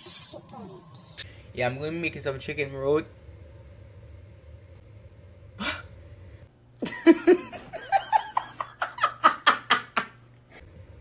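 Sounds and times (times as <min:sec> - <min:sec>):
man laughing: 0:06.8 - 0:10.2.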